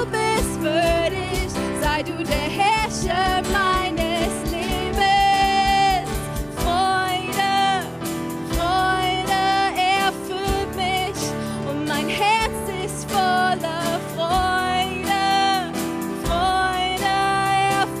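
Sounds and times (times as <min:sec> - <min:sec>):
worship band playing: 0:00.0 - 0:18.0
drum beat: 0:02.3 - 0:07.0.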